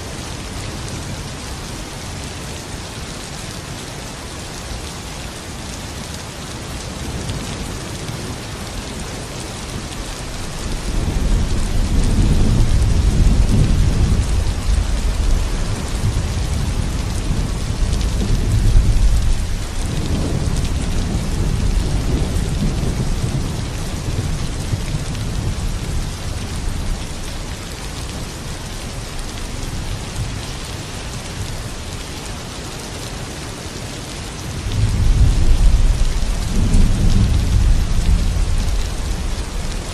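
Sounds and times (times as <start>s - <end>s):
steady rain falling: 0.0s - 39.9s
rolling thunder: 10.6s - 26.0s, 34.7s - 39.8s.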